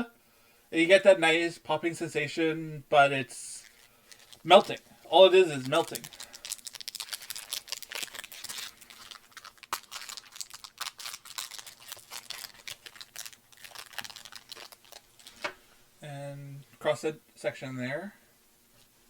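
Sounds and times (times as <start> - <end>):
wrapper crinkling: 3.6 - 15.6.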